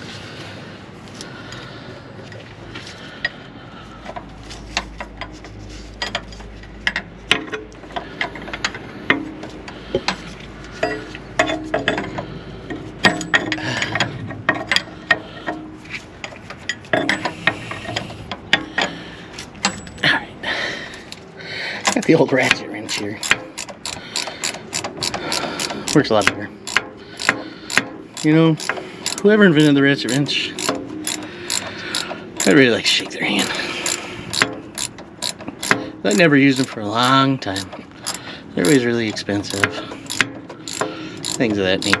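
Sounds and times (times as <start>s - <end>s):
ratcheting wrench clicking: 21.8s - 42.0s.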